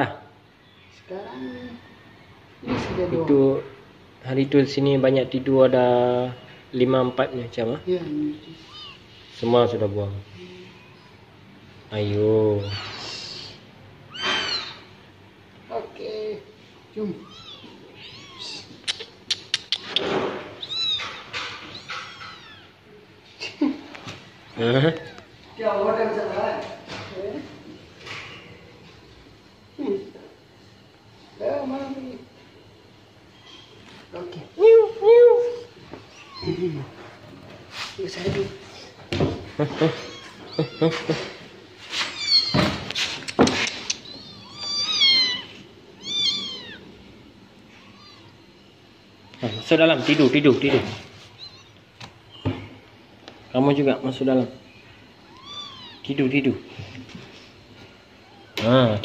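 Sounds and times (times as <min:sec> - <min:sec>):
kittens mewing: 0:08.4 - 0:09.3, 0:12.6 - 0:15.1, 0:16.8 - 0:25.6, 0:32.7 - 0:37.3, 0:38.5 - 0:50.2, 0:51.2 - 0:52.3, 0:55.0 - 0:56.1.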